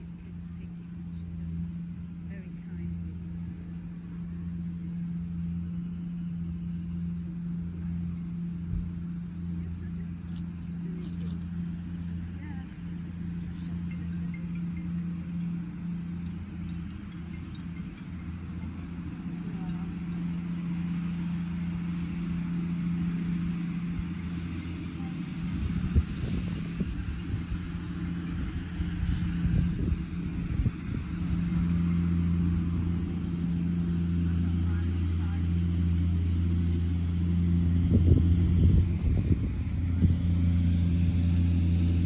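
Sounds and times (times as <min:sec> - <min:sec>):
road traffic drone: 0:00.0 - 0:42.0
steady low hum: 0:00.0 - 0:42.0.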